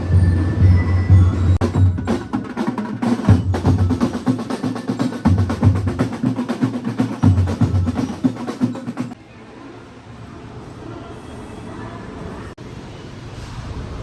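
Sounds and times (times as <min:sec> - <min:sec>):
percussion-heavy background music: 0:00.0 - 0:09.2.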